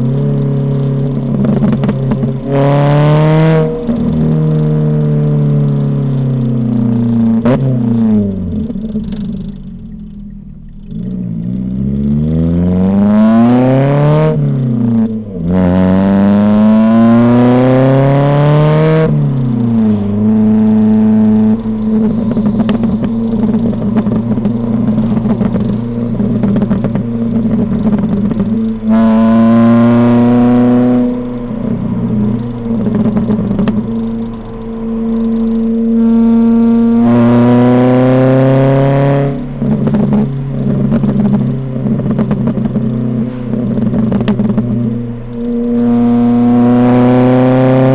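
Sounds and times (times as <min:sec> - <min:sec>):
car engine revving through exhaust: 0:00.0 - 0:47.9.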